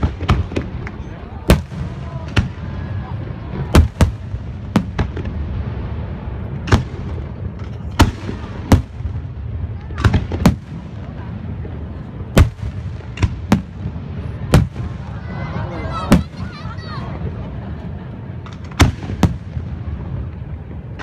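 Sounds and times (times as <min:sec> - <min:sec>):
fireworks bangs: 0:00.0 - 0:21.0.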